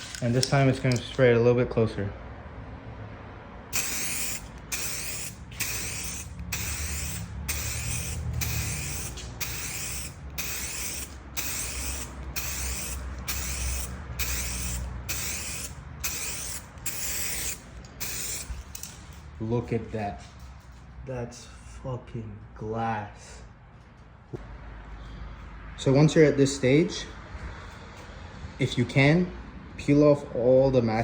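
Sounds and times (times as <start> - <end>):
aerosol can spraying: 3.7 - 18.6.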